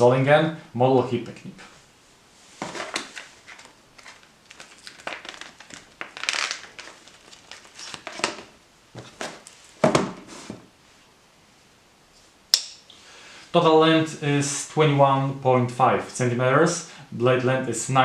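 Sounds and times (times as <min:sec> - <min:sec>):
packaging rustling and crinkling: 0:02.5 - 0:10.6
sharp click: 0:12.5 - 0:12.9.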